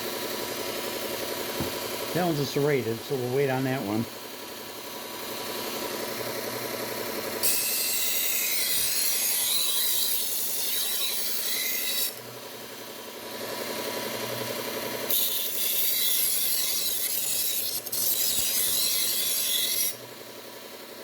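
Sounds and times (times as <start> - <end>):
belt grinder running: 0.0 - 21.0
knife blade grinding on belt: 7.4 - 12.2, 15.1 - 20.0.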